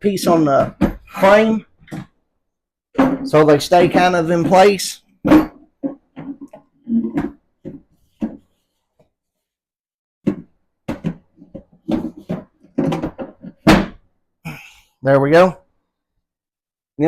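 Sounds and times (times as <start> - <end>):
hard plastic parts knocking: 0.2 - 2.2, 10.2 - 14.0.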